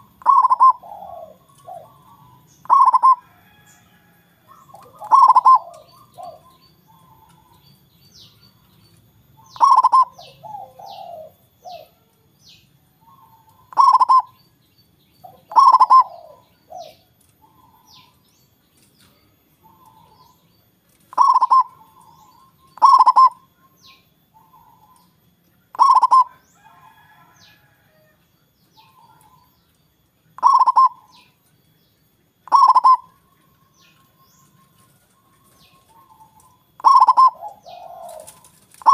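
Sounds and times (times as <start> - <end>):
dove cooing: 0.0 - 7.6, 9.4 - 12.1, 13.0 - 14.4, 15.2 - 18.2, 21.0 - 25.0, 25.7 - 27.4, 30.4 - 31.4, 32.4 - 33.3, 34.5 - 38.9
small birds chirping: 0.0 - 27.6, 28.4 - 38.9.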